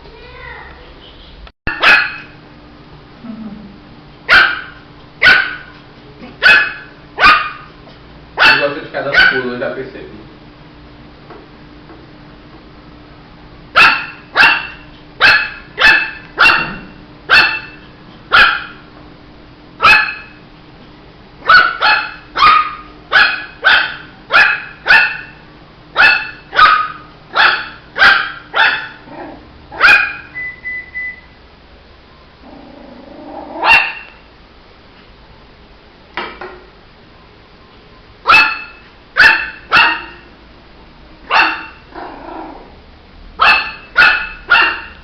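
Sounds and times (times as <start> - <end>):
puppy barking: 1.7 - 2.4, 4.3 - 7.8, 8.4 - 9.5, 13.8 - 18.9, 19.8 - 20.4, 21.4 - 25.4, 26.0 - 30.4, 33.5 - 34.3, 38.2 - 40.3, 41.3 - 42.4, 43.4 - 45.0.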